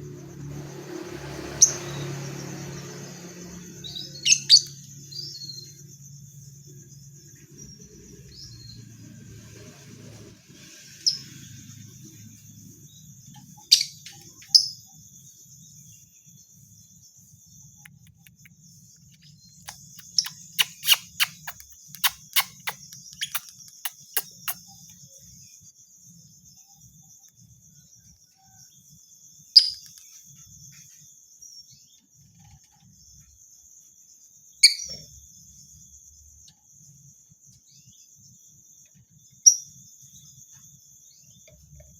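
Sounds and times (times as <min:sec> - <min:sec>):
high-pitched insect trill: 0:00.0 - 0:09.2, 0:10.8 - 0:32.1
lovebird chirping: 0:17.4 - 0:24.9.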